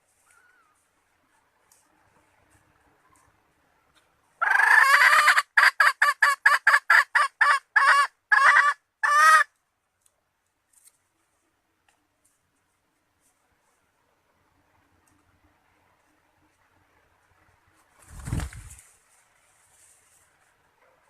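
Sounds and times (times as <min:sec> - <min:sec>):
hen calling and clucking: 0:00.0 - 0:09.6.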